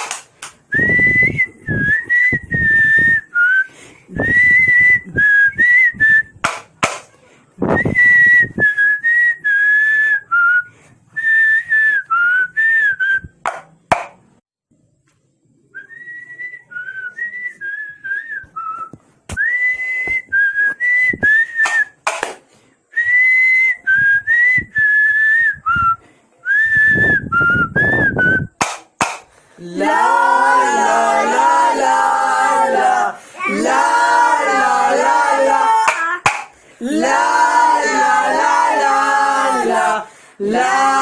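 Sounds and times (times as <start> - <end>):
person whistling a melody: 0.7 - 6.4, 7.7 - 13.4, 15.7 - 22.0, 22.9 - 28.6.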